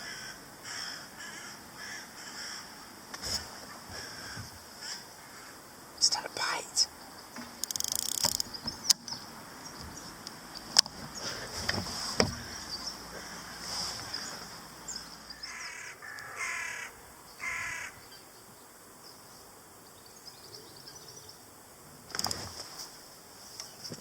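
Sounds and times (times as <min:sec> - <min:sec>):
small knocks: 0:07.4 - 0:09.1, 0:10.6 - 0:12.6
bird calling: 0:12.2 - 0:18.3.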